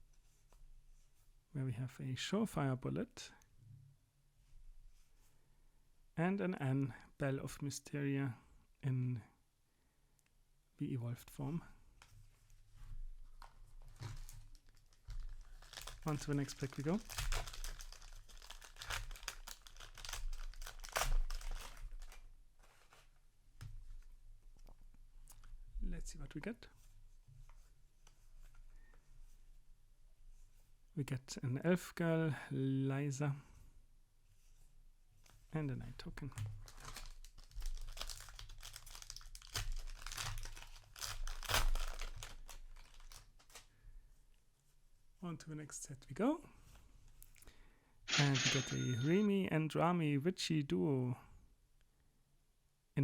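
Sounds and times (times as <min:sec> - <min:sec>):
wrapper crinkling and tearing: 0:13.8 - 0:23.0, 0:36.6 - 0:43.7.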